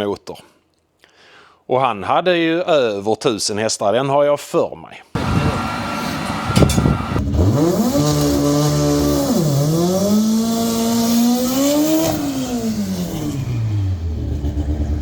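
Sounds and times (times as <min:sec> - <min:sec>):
race car engine accelerating hard: 0:05.2 - 0:15.0.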